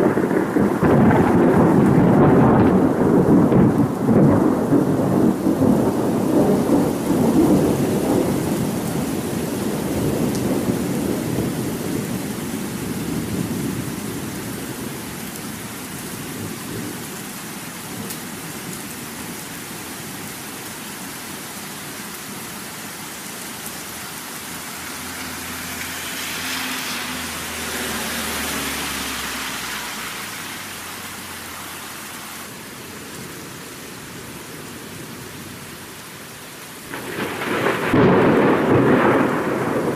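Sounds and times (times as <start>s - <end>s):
thunder rumbling: 0.0s - 15.6s, 36.9s - 39.9s
rain falling: 0.0s - 39.9s.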